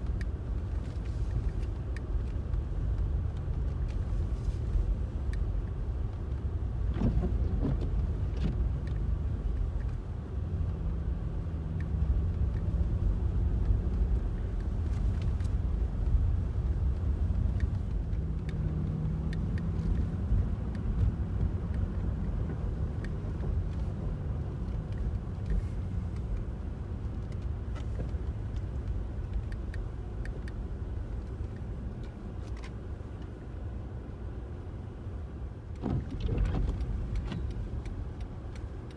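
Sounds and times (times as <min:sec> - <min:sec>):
car road noise rumble: 0:00.0 - 0:38.9
light clicks: 0:11.8 - 0:23.9, 0:27.2 - 0:33.4.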